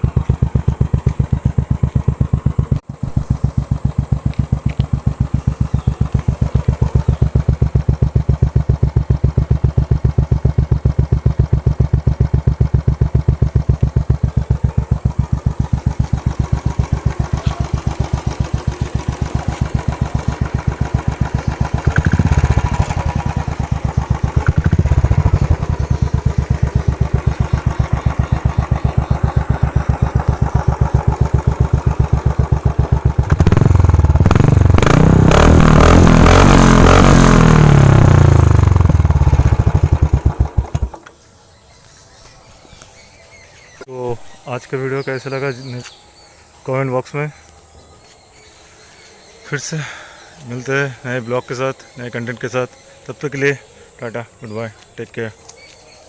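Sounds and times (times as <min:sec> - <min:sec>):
motorcycle idling and revving: 0:00.0 - 0:43.9.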